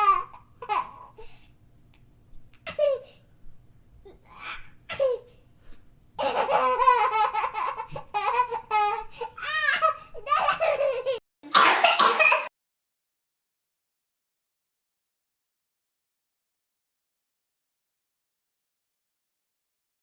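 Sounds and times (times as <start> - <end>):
cartoon voice laughing: 11.5 - 12.5
short harsh cough: 11.5 - 12.5.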